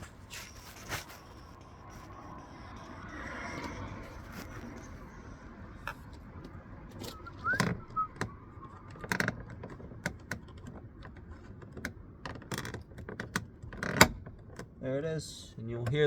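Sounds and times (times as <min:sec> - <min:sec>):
hard plastic clicks and knocks: 0:05.9 - 0:14.8
brief squeak: 0:07.0 - 0:09.0.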